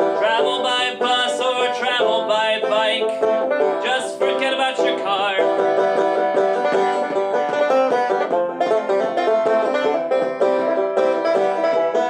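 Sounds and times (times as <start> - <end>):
person singing: 0.0 - 3.2, 3.8 - 5.5
banjo picking: 0.0 - 12.0.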